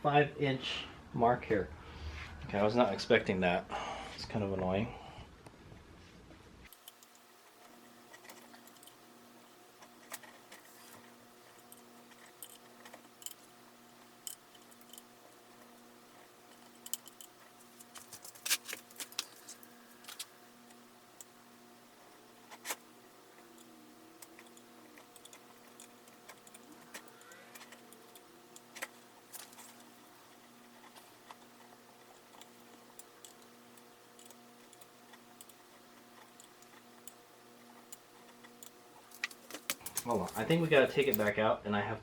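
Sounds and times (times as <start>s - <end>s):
faint pulsing hum: 0.0s - 18.0s
metal tools clicking and tapping: 8.1s - 9.0s, 11.5s - 21.3s, 23.4s - 37.2s.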